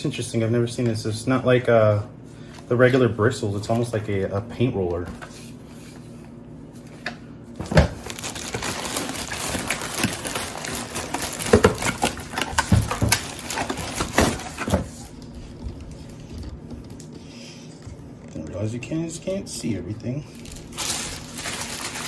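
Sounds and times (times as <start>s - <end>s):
packaging rustling and crinkling: 7.6s - 18.9s, 19.6s - 22.0s.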